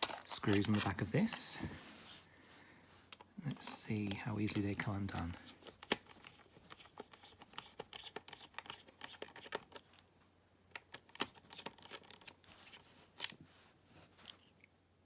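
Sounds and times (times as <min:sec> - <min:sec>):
screwdriver clicks and scrapes: 0:03.1 - 0:10.0.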